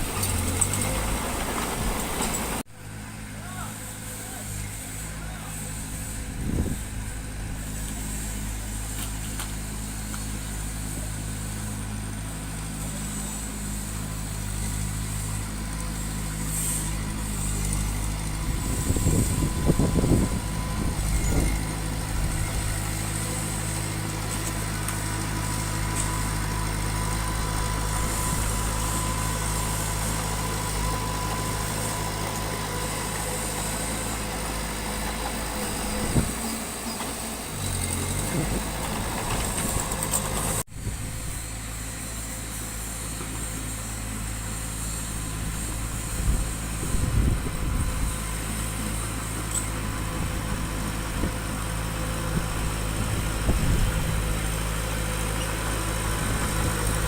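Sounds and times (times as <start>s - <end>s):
machinery clattering: 0.0s - 2.6s, 24.2s - 40.6s
diesel construction machinery engine: 0.0s - 57.0s.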